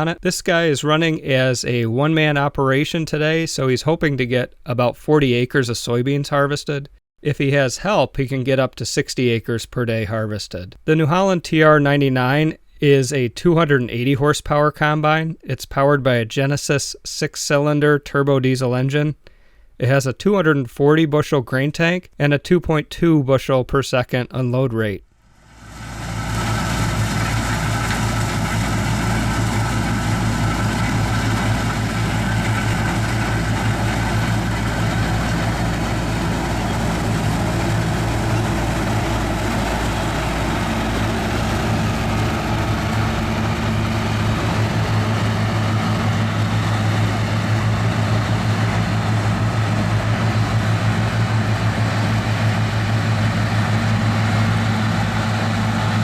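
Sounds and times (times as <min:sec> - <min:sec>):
combine harvester engine drone: 0:25.4 - 0:56.0
threshing machinery noise: 0:25.4 - 0:56.0.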